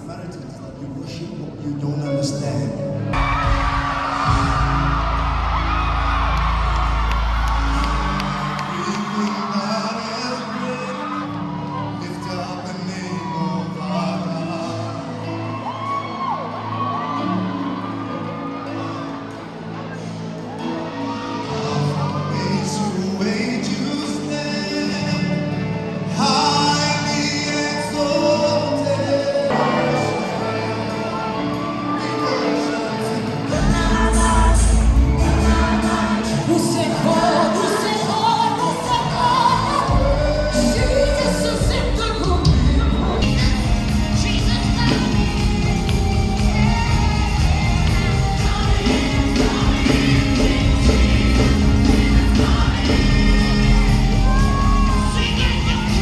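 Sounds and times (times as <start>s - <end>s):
crowd voices: 0.0s - 56.0s
gospel singers: 1.0s - 56.0s
band playing: 2.1s - 56.0s
heavy bass: 3.2s - 8.6s, 33.5s - 36.4s, 39.2s - 56.0s.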